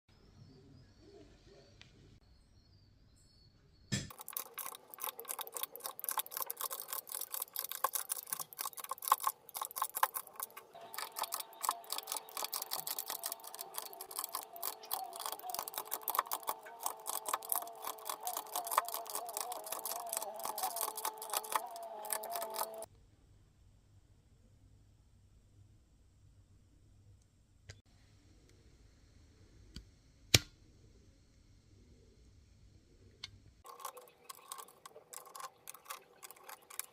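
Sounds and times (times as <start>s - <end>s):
computer keyboard clicking: 4.1s - 22.9s, 33.7s - 36.9s
wavering steady tone: 10.3s - 22.9s.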